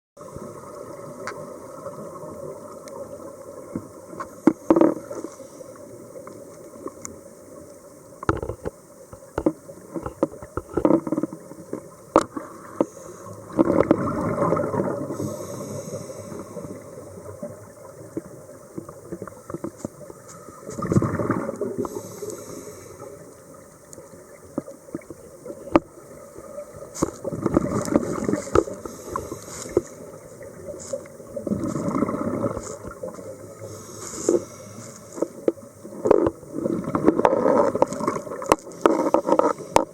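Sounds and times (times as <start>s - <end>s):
underwater hiss: 4.1s - 6.4s, 12.3s - 39.9s
bubbles gurgling: 13.4s - 15.3s, 20.5s - 22.1s, 24.1s - 29.4s, 30.0s - 33.7s, 35.4s - 39.9s
scuba regulator breathing: 15.1s - 17.0s, 21.8s - 23.3s, 27.8s - 30.2s, 33.5s - 35.4s.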